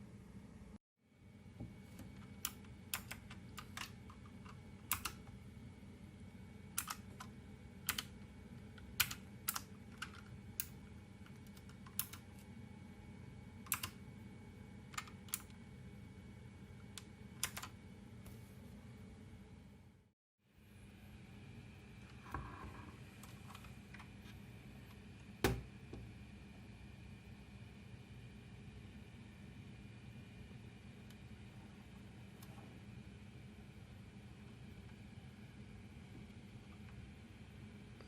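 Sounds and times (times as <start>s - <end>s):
steady low hum: 0.0s - 38.0s
mechanical keyboard key clicks: 13.7s - 14.0s.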